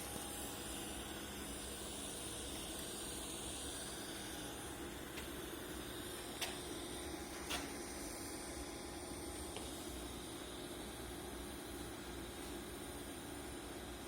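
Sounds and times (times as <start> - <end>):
welding arc hissing: 0.0 - 8.6.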